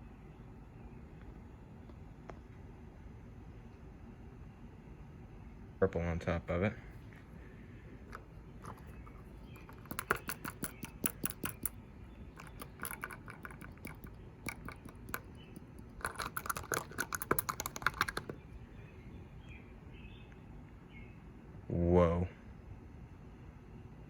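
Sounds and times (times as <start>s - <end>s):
glitter rattling in plastic container: 8.1s - 18.4s.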